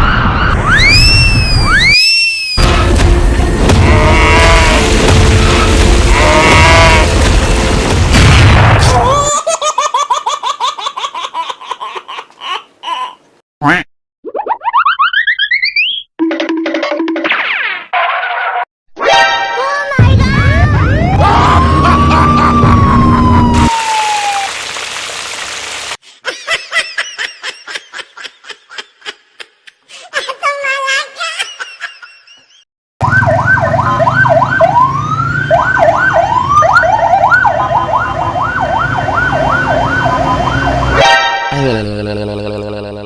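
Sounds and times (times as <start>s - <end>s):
electronic siren wailing: 0.0s - 8.0s, 20.6s - 24.6s, 33.0s - 41.2s
horn-like blast sliding down: 20.8s - 24.7s.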